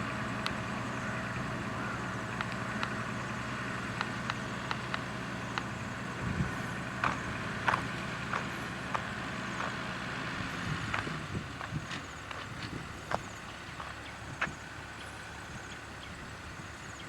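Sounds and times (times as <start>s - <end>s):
diesel engine running: 0.0s - 17.0s
sharp clicks and ticks: 2.4s - 3.0s, 4.0s - 5.7s.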